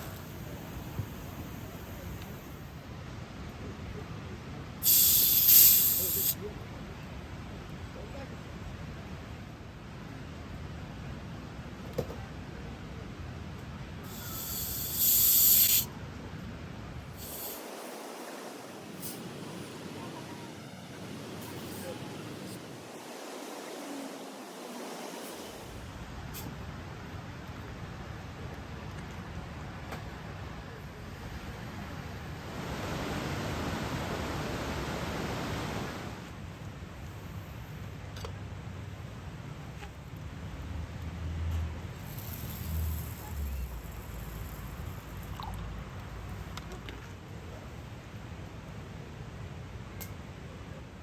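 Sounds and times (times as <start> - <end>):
spray hiss: 4.8 - 6.4, 14.0 - 15.9, 17.2 - 20.8, 42.0 - 45.0.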